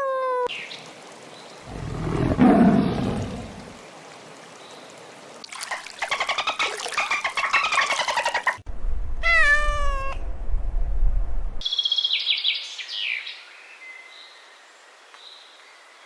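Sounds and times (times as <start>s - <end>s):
cat meowing: 9.2s - 10.2s.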